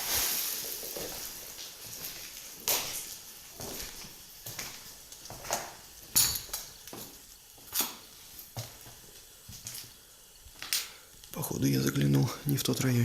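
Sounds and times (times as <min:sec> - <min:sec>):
footsteps crunching over debris: 0:00.0 - 0:05.8.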